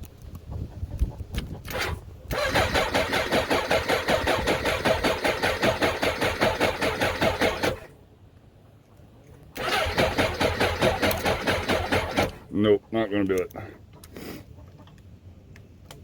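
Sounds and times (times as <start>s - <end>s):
motorcycle engine cranking: 1.6s - 7.9s, 9.6s - 12.5s.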